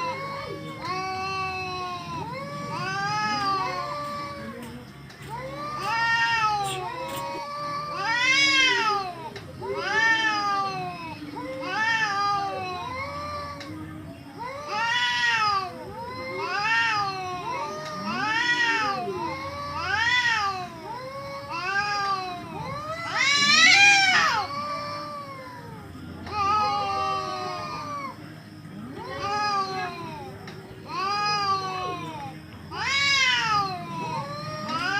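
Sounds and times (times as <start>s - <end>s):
cats yowling: 0.0s - 13.8s, 14.4s - 28.2s, 28.8s - 34.9s.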